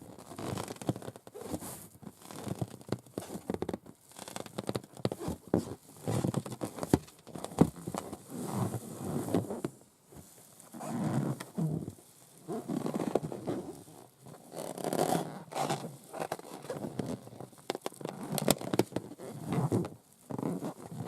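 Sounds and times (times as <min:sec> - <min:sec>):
nails scratching a rubber balloon: 0:12.5 - 0:21.0.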